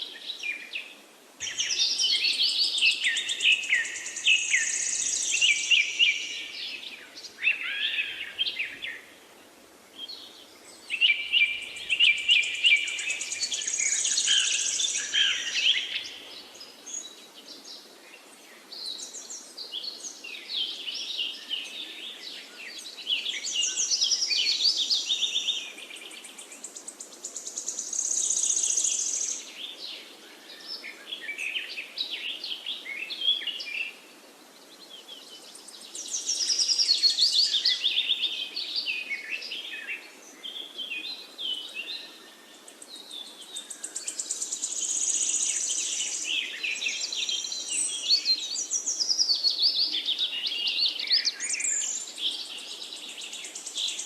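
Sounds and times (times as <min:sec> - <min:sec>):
songbirds chirping: 0:00.0 - 0:54.0
flowing river water: 0:28.6 - 0:49.1.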